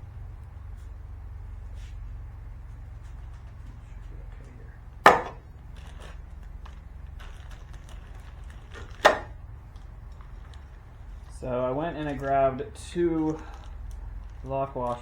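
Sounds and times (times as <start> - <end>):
steady low hum: 0.0 - 15.0
sharp knocks: 5.1 - 5.4, 9.0 - 9.3
small parts clicking and rattling: 5.1 - 11.4.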